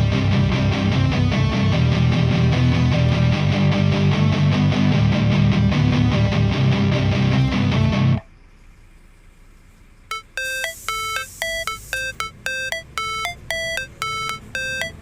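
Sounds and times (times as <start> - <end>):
electronic beeping melody: 10.1 - 15.0.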